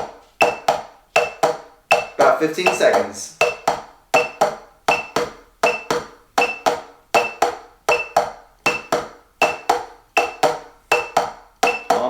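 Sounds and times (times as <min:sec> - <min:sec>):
drumsticks striking practice pad: 0:00.0 - 0:12.0
short high beep: 0:03.4 - 0:12.0.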